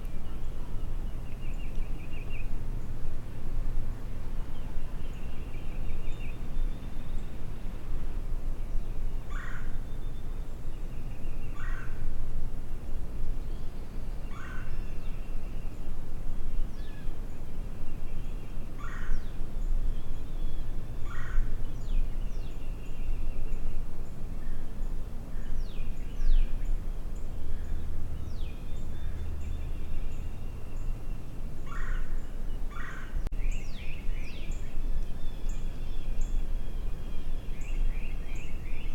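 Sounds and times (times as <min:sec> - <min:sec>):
songbirds trilling and calling: 0:00.0 - 0:03.1, 0:03.9 - 0:07.9, 0:08.5 - 0:12.1, 0:13.4 - 0:38.9
wind rumble on microphone: 0:00.0 - 0:38.9.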